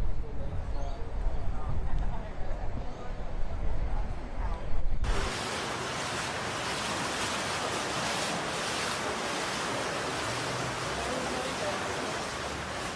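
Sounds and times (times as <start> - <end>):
water rushing: 5.0 - 12.9.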